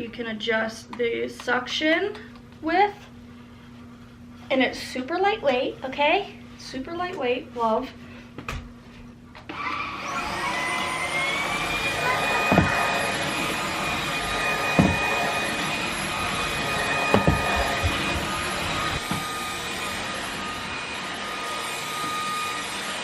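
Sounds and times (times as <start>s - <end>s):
vacuum cleaner motor whine: 9.4s - 23.0s
dull knocks: 12.4s - 12.9s, 14.7s - 15.2s, 17.1s - 18.1s.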